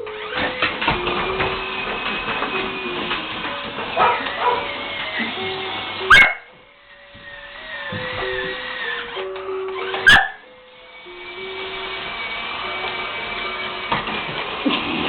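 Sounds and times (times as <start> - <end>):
toy train electronic tune: 0.0 - 15.0
dog barking and yipping: 3.9 - 4.8, 6.0 - 6.6, 10.0 - 10.4.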